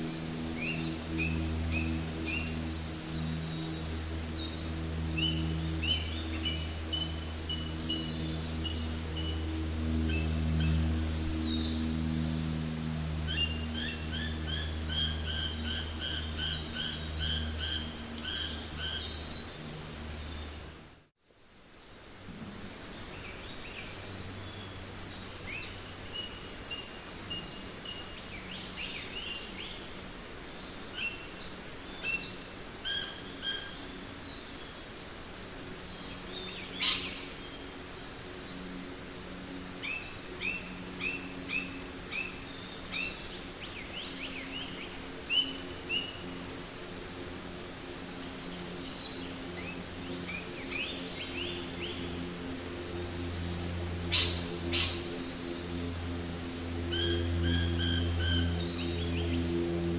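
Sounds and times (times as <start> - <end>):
birds calling and chirping: 0.0 - 21.0, 35.5 - 47.3, 48.1 - 59.9
low steady hum: 0.0 - 59.9.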